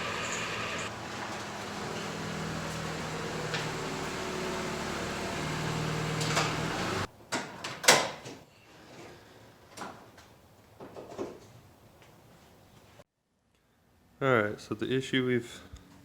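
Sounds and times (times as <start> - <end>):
car engine running: 0.0 - 7.1.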